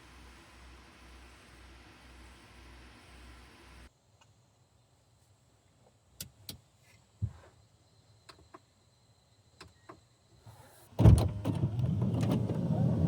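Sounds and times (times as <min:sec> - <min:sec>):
car engine starting and rumbling: 0:11.0 - 0:13.0.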